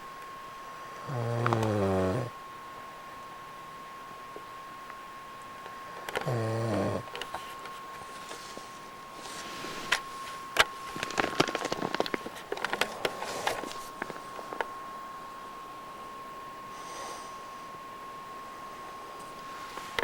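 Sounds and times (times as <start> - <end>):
man snoring: 1.0 - 2.4, 6.2 - 7.1
crackling and clicking: 1.4 - 1.8, 9.9 - 14.7.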